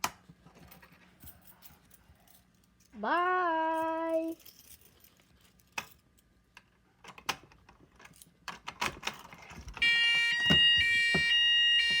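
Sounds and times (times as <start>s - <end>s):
fire alarm sounding: 9.8s - 12.0s.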